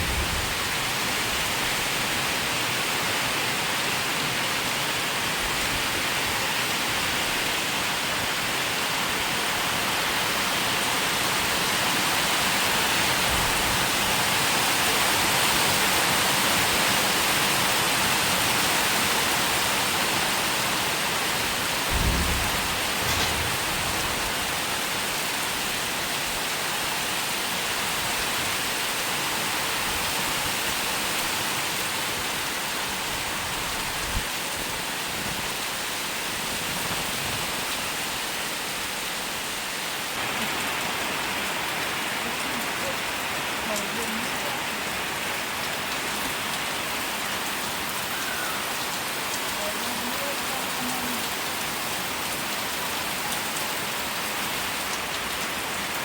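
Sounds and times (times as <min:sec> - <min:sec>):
steady rain falling: 0:00.0 - 0:56.0
low thump: 0:21.9 - 0:24.5.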